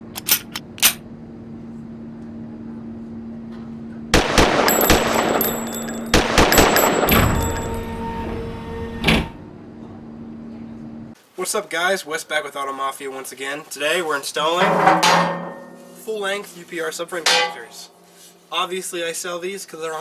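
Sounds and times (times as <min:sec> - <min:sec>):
rapid gunfire bursts: 0:04.2 - 0:05.4
gunshots: 0:04.2 - 0:07.7.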